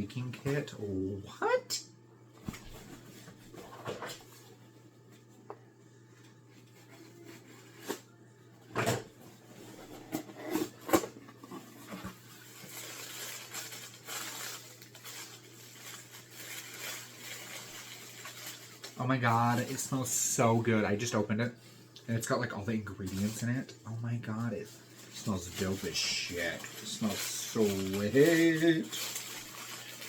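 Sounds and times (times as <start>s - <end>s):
packaging rustling: 10.5s - 19.9s, 24.4s - 30.0s.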